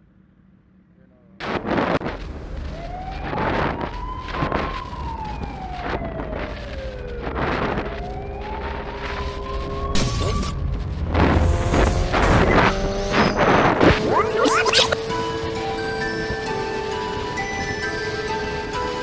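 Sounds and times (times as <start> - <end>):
siren wailing: 13.8 - 15.0.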